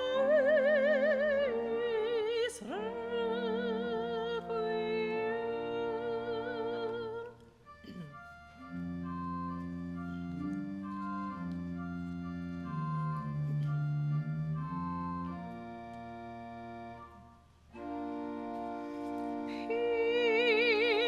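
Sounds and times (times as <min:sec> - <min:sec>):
person singing: 0:00.0 - 0:08.2
pipe organ playing held chords: 0:02.7 - 0:21.0.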